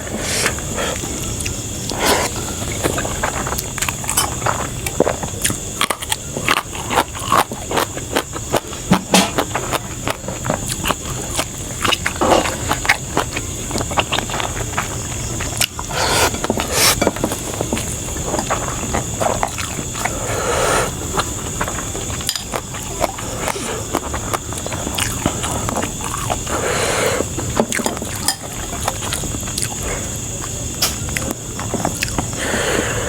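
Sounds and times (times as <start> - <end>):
high-pitched hiss: 0.0 - 3.3, 15.7 - 18.0, 19.8 - 22.4
person chewing with wet smacks: 0.0 - 20.2, 20.9 - 26.6, 27.2 - 32.4.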